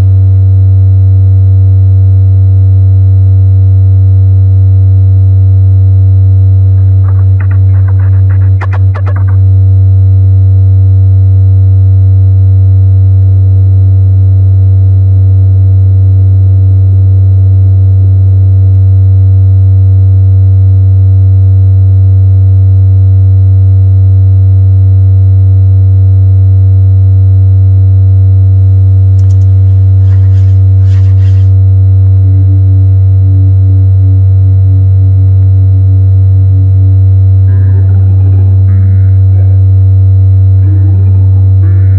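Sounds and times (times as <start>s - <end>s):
higher electronic tone: 6.1s - 10.3s, 28.4s - 35.1s, 36.4s - 41.9s
low electronic drone: 6.1s - 10.6s, 28.5s - 41.9s
high crackling: 6.7s - 9.5s, 28.6s - 32.9s, 37.5s - 41.9s.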